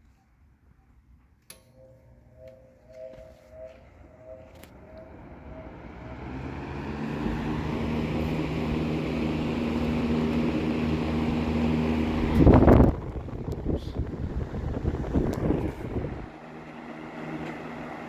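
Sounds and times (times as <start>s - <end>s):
box fan running: 1.5s - 18.0s
air buffeting: 2.6s - 18.0s.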